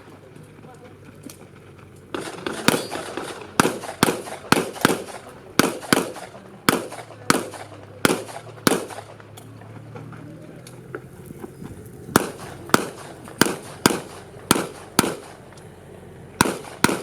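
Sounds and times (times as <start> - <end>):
handgun shots: 2.1 - 9.5, 12.2 - 15.5, 16.4 - 17.0.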